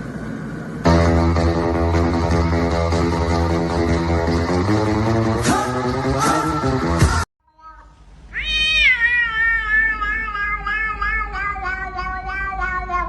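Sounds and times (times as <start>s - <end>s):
pop music: 0.9s - 7.3s
cat meowing: 7.6s - 13.0s.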